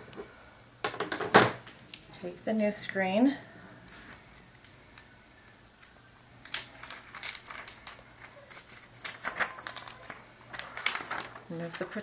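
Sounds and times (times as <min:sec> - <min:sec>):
plastic packaging crinkling: 0:03.9 - 0:12.0.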